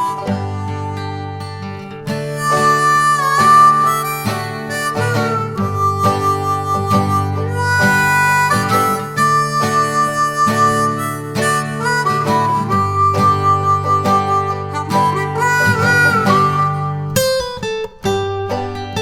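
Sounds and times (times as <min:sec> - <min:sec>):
harmonica melody: 0:00.0 - 0:19.0
strummed acoustic guitar: 0:00.0 - 0:19.0.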